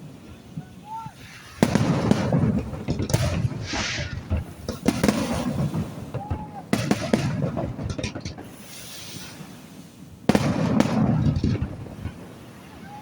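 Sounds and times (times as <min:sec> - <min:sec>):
fireworks crackling and rumble: 0:00.0 - 0:13.0
fireworks boom: 0:01.6 - 0:08.5, 0:10.3 - 0:12.4.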